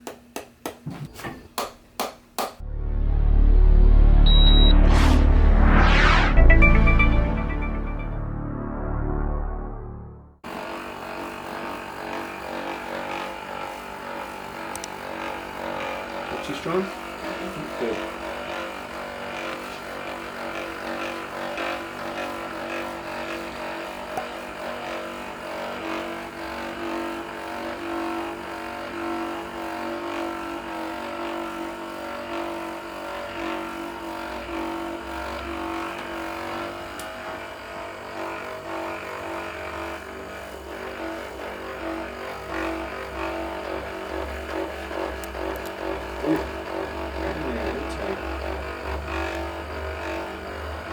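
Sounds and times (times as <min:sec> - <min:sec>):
massage device motor hum: 0:04.2 - 0:06.7, 0:10.4 - 0:50.9.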